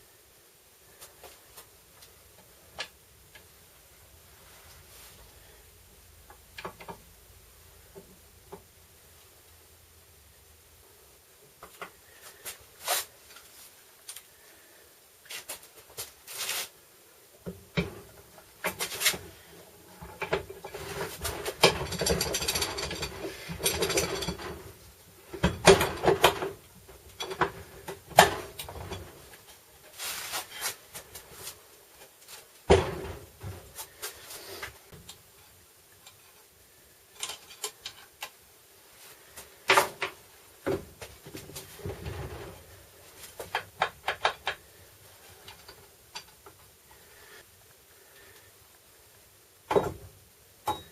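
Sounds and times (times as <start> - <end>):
hand tools clicking and knocking: 20.0 - 24.7, 25.3 - 29.2, 37.1 - 38.4, 43.4 - 44.7.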